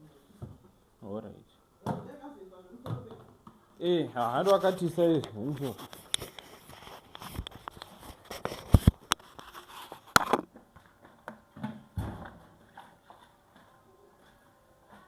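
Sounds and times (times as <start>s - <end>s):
objects clicking and knocking: 5.9s - 13.0s.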